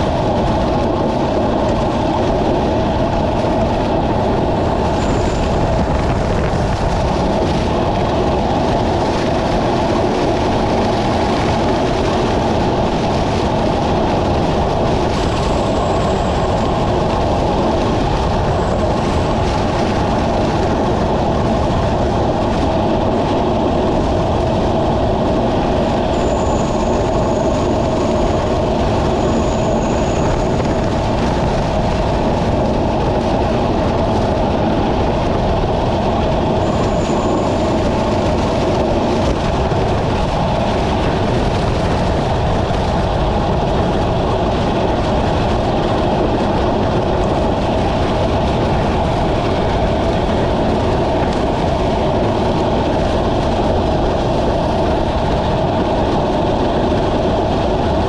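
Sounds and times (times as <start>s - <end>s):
wind rushing: 0.0s - 58.0s
faint high whine: 23.8s - 34.2s.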